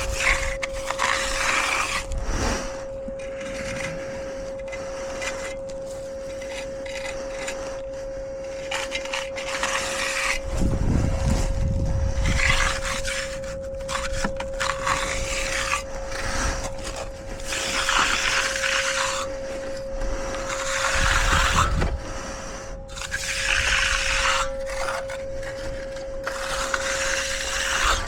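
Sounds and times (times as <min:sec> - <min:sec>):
hand tools scraping concrete: 0:00.0 - 0:28.0
steady single-pitch hum: 0:00.0 - 0:28.0.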